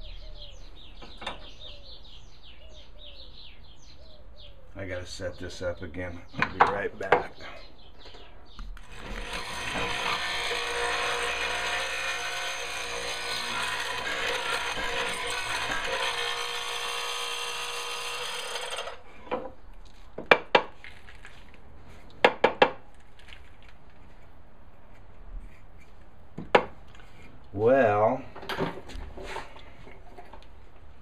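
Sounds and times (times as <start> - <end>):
power tool cutting wood: 8.8 - 19.1
sharp wooden knocks: 20.2 - 20.7, 22.2 - 22.9, 26.4 - 26.8.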